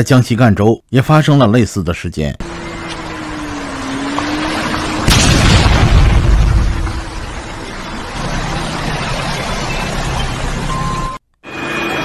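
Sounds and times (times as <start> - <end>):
explosion booming: 5.0 - 7.4.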